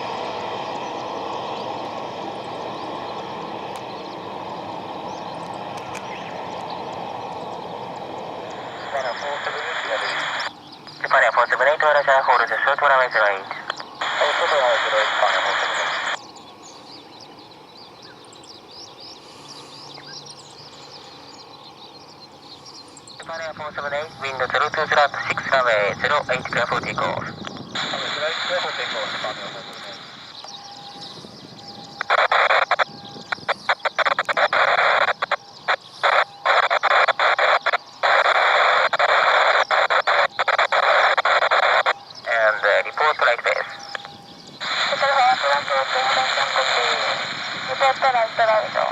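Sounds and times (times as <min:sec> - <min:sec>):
small birds chirping: 0:00.2 - 0:48.9
radio static hiss: 0:08.0 - 0:16.2, 0:23.2 - 0:30.6, 0:32.0 - 0:48.9.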